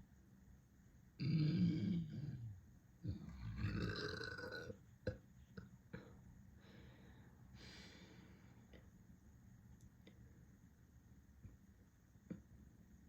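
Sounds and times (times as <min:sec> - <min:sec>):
long deep burps: 0:01.2 - 0:06.1.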